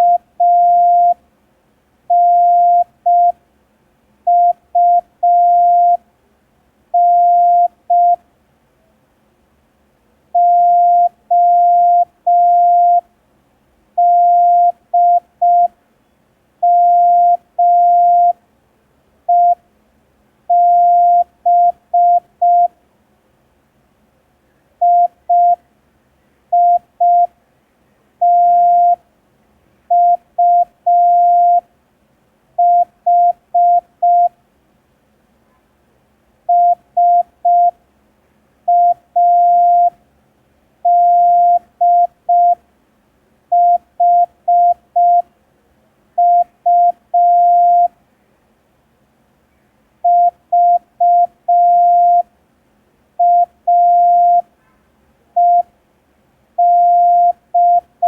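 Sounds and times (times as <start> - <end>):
morse code tone: 0.0 - 1.2, 2.1 - 3.4, 4.3 - 6.0, 7.0 - 8.2, 10.4 - 13.0, 14.0 - 15.7, 16.6 - 18.4, 19.3 - 19.6, 20.5 - 22.7, 24.8 - 25.6, 26.6 - 27.3, 28.2 - 29.0, 29.9 - 31.6, 32.6 - 34.3, 36.5 - 37.8, 38.7 - 40.0, 40.9 - 42.6, 43.5 - 45.2, 46.2 - 47.9, 50.0 - 52.3, 53.2 - 54.5, 55.4 - 55.7, 56.6 - 58.0.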